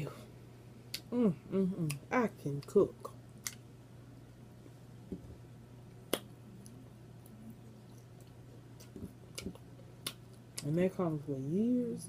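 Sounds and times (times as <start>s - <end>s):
steady low hum: 0.0s - 12.0s
lip smack: 6.1s - 10.6s.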